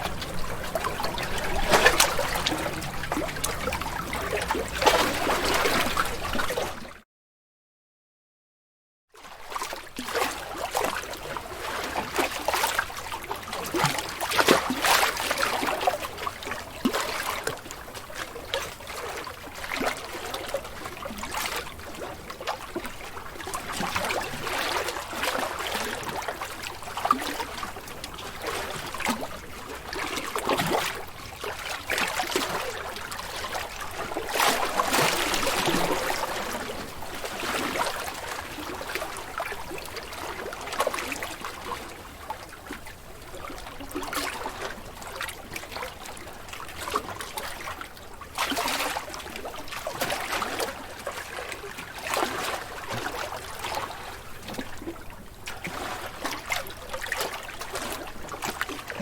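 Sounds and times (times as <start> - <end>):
ocean waves splashing: 0.0 - 6.9, 23.3 - 45.8.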